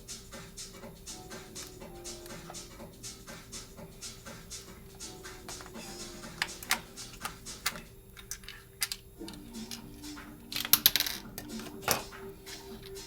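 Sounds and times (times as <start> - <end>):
plastic and metal parts clicking: 6.4 - 9.9, 10.5 - 12.1.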